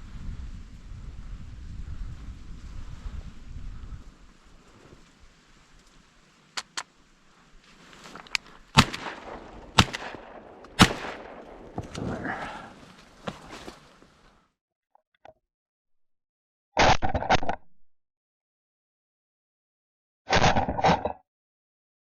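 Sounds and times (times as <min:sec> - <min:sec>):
shotgun shots: 0:08.7 - 0:12.1.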